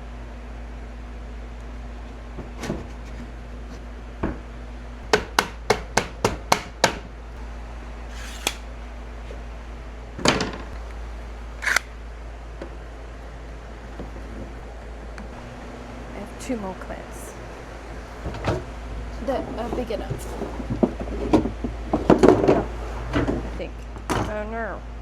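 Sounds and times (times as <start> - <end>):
hammer striking wood: 5.1 - 7.1.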